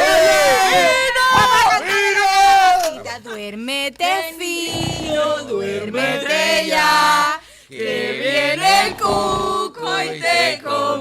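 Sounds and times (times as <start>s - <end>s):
voices singing a song: 3.7s - 11.0s.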